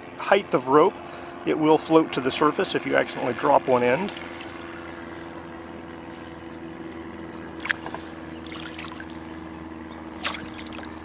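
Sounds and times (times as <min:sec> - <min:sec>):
steady low hum: 0:00.0 - 0:11.0
water drips and small splashes: 0:04.0 - 0:05.5, 0:07.6 - 0:11.0.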